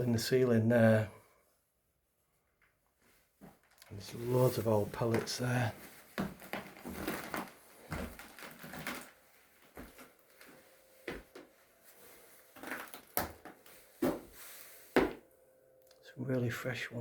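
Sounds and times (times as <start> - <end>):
small knocks clicks and scuffs: 5.0 - 9.1, 15.0 - 15.2.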